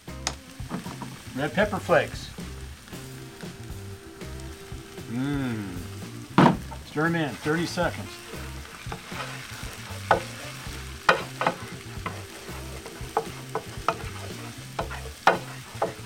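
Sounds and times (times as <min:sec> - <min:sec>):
garlic sizzling in hot oil: 0:00.0 - 0:16.0
spoon knocking and scraping pan: 0:00.2 - 0:01.6, 0:06.3 - 0:16.0.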